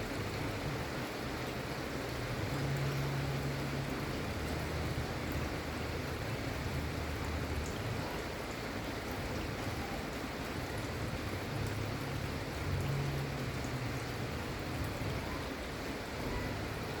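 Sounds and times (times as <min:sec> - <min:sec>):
gentle rain falling: 0:00.0 - 0:17.0.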